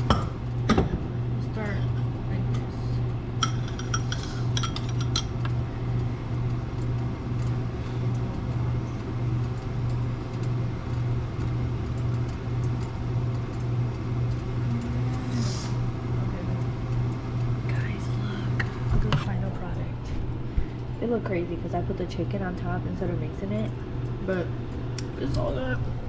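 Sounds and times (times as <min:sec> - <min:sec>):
pulsing low hum: 0:00.0 - 0:26.0
dishes clinking: 0:03.4 - 0:05.4.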